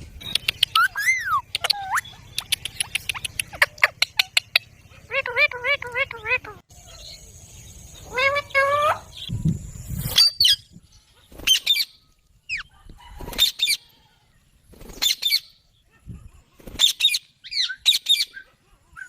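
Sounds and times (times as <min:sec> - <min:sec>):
parakeets screeching: 0:00.4 - 0:07.2, 0:07.9 - 0:09.3.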